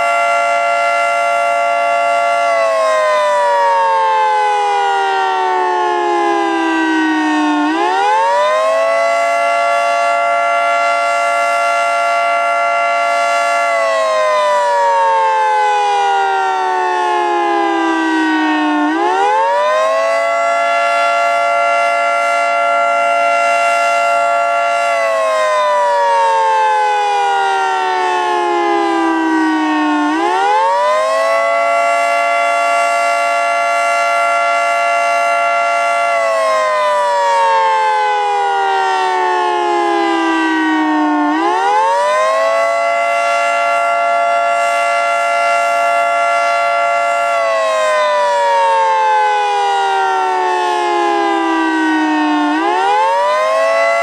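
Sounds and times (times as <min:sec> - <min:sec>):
rotating siren winding up and down: 0:13.7 - 0:54.0.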